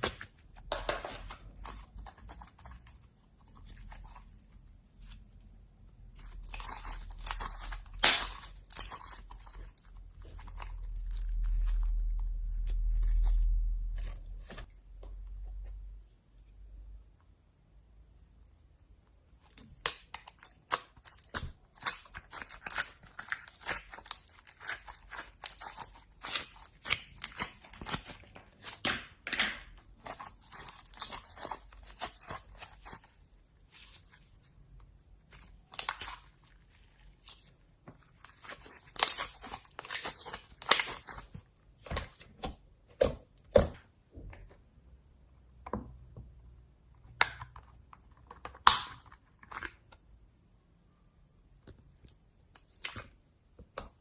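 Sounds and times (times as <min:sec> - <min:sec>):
slime crackling and popping: 0:06.2 - 0:14.7, 0:19.4 - 0:28.8, 0:30.0 - 0:33.1, 0:35.3 - 0:37.4, 0:38.1 - 0:42.1.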